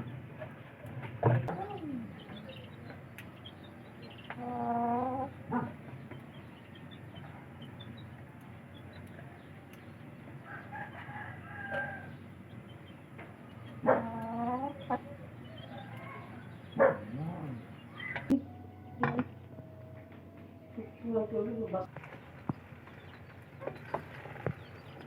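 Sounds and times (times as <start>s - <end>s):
chicken calls: 0.0s - 25.0s
small birds chirping: 0.0s - 25.0s
rooster crowing: 10.4s - 12.2s, 15.6s - 16.5s, 17.1s - 20.8s.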